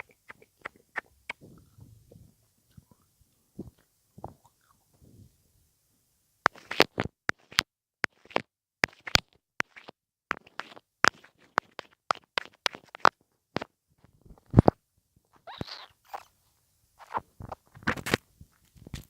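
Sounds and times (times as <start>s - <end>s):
wet mouth clicks and smacks: 0.0s - 1.8s.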